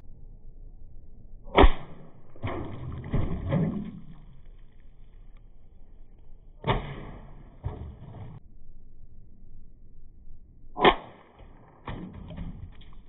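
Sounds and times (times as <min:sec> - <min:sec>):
airsoft rifle shot crack: 0:01.5 - 0:02.8, 0:06.6 - 0:08.4, 0:10.8 - 0:12.6.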